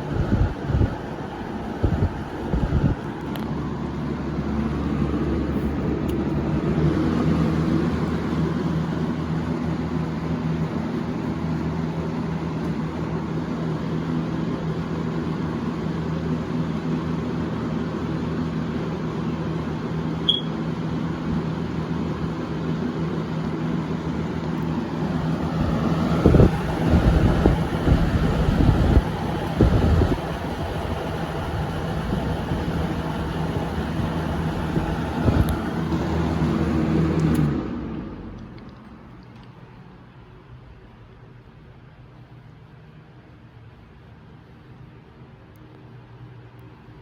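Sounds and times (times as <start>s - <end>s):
low rumbling buffets: 0.0s - 12.3s, 20.2s - 41.1s
box fan running: 0.0s - 47.0s.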